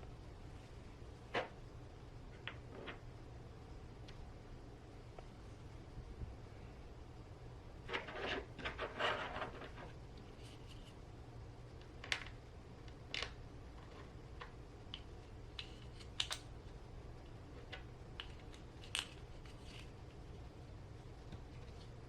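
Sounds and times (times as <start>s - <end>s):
faint low hum: 0.0s - 22.0s
small parts clicking and tapping: 11.8s - 16.5s.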